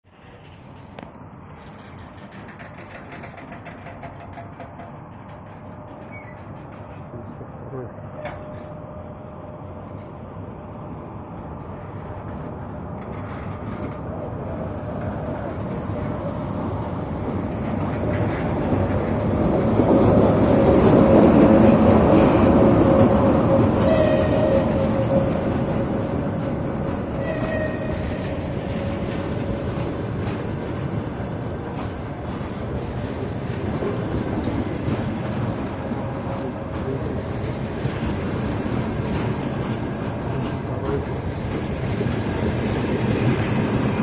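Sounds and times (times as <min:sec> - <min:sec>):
wheels clicking over rail joints: 0:00.1 - 0:07.5, 0:17.5 - 0:44.0
train wheels rumbling on rail: 0:00.1 - 0:44.0
wheel squeals: 0:05.9 - 0:06.9, 0:27.1 - 0:28.4.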